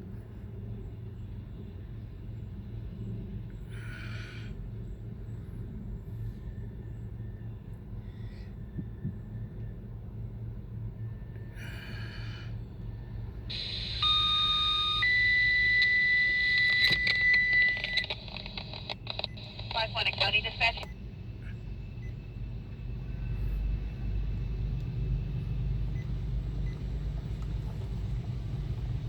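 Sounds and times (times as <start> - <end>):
low steady rumble: 0.0 - 29.0
radio clicks: 13.5 - 20.9
radio hiss: 13.5 - 20.9
radio electronic tone beeps: 13.5 - 21.0.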